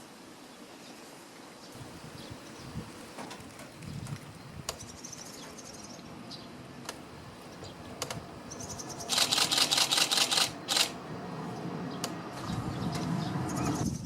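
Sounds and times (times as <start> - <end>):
swallows twittering: 7.4 - 10.4
camera shutter clicking: 9.1 - 11.0.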